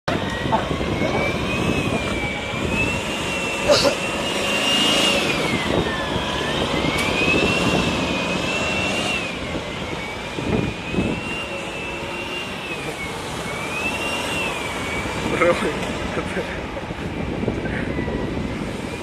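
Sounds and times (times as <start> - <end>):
jet engine whine: 0.1 - 19.0.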